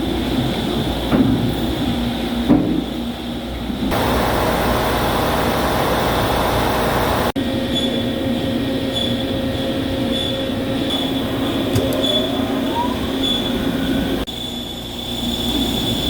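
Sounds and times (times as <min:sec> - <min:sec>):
machine running with squealing whine: 0:03.9 - 0:08.2, 0:08.8 - 0:16.0.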